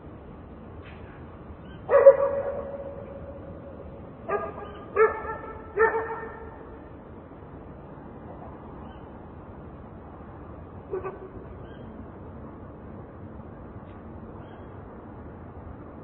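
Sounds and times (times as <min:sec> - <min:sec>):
distant traffic hum: 0:00.0 - 0:16.0
dog barking: 0:01.9 - 0:03.2, 0:04.3 - 0:06.6, 0:10.9 - 0:11.4.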